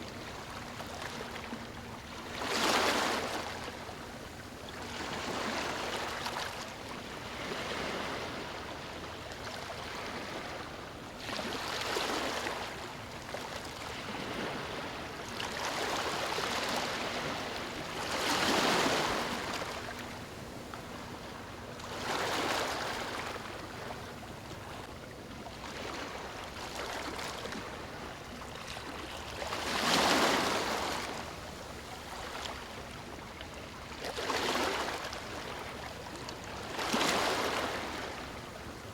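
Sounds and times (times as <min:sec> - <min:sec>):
sea waves breaking on beach: 0:02.2 - 0:03.8, 0:07.2 - 0:08.9, 0:13.6 - 0:20.1, 0:25.6 - 0:32.7, 0:34.0 - 0:35.8, 0:36.5 - 0:38.4.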